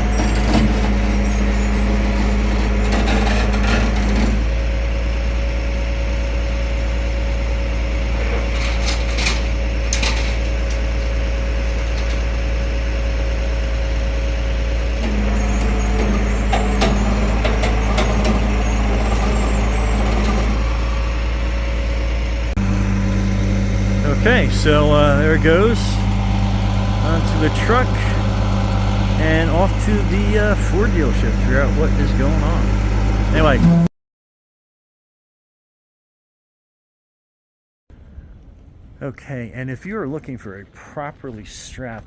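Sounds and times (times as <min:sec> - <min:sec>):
truck engine hum: 0:00.0 - 0:33.9
winch whine: 0:00.0 - 0:33.9
metallic clanks: 0:08.2 - 0:11.1, 0:15.0 - 0:20.6.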